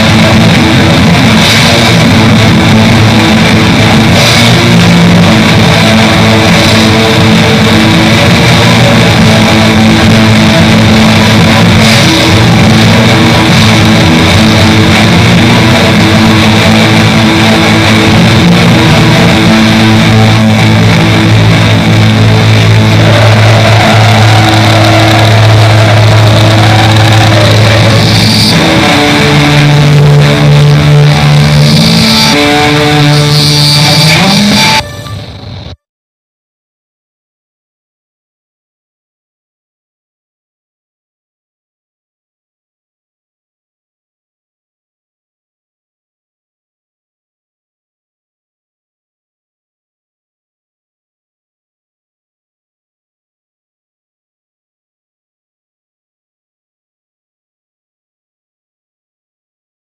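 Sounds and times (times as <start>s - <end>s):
black metal music: 0.0s - 35.8s.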